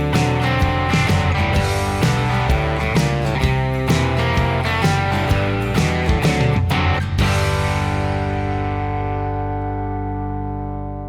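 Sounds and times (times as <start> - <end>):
guitar-led music with steady beat: 0.0 - 11.0.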